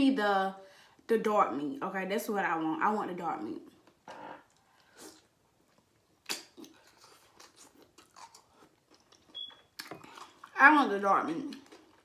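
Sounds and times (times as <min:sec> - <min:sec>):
person chewing: 0:03.8 - 0:10.6, 0:11.5 - 0:12.0
lip smacks: 0:03.9 - 0:10.5
crunchy bite: 0:06.2 - 0:08.8.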